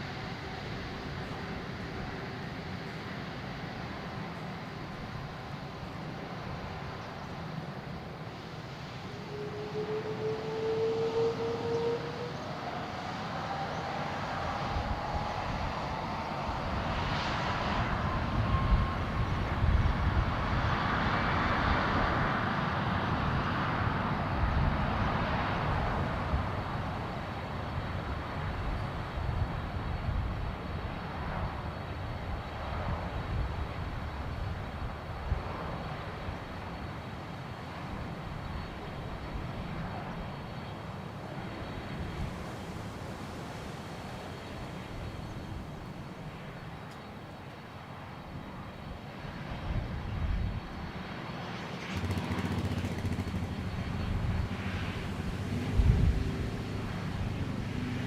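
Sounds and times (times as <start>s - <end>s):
jet airliner taking off: 0.0s - 58.0s.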